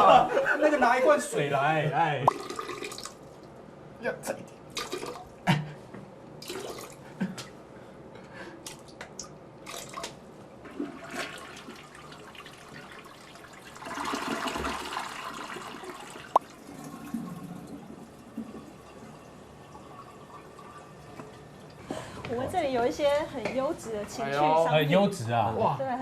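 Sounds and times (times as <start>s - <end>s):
toilet flushing: 2.0s - 3.4s, 4.7s - 5.4s, 6.4s - 7.1s, 9.6s - 23.0s
water splashing into toilet bowl: 2.2s - 3.2s, 4.7s - 5.3s, 6.4s - 7.0s, 9.6s - 21.8s.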